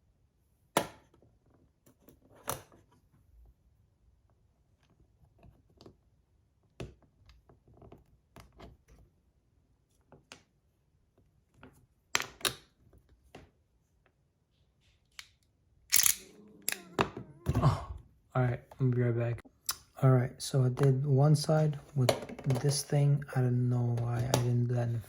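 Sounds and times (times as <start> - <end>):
plastic parts clicking: 15.9 - 17.2.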